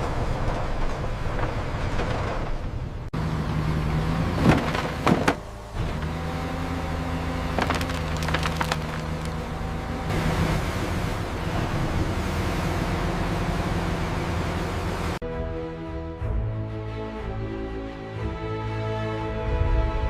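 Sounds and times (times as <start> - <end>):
wood chipper running: 3.2 - 15.2
wood splintering cracks: 7.4 - 9.5.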